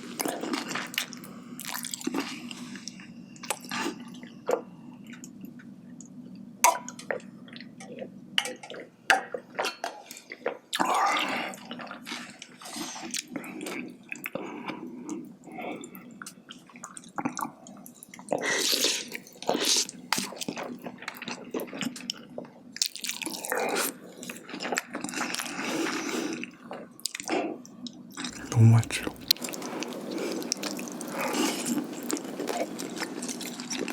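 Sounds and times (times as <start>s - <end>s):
sharp mouth clicks: 28.3s - 29.4s
wet chewing and smacking: 28.3s - 29.6s.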